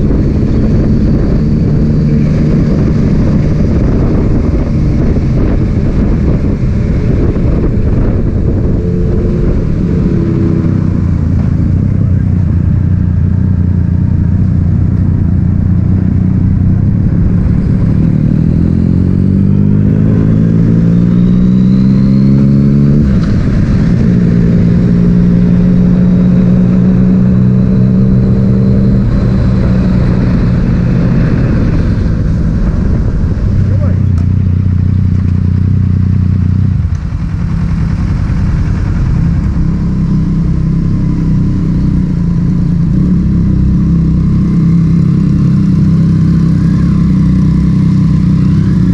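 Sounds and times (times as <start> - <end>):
wind rushing: 0.0 - 12.2, 16.4 - 33.9
motorcycle engine revving: 0.0 - 48.9.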